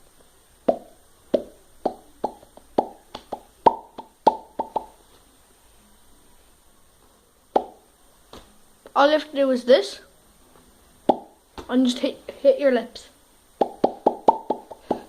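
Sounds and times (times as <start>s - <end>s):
mouth popping noises: 0.6s - 5.0s, 7.5s - 7.8s, 11.0s - 11.4s, 13.6s - 15.0s.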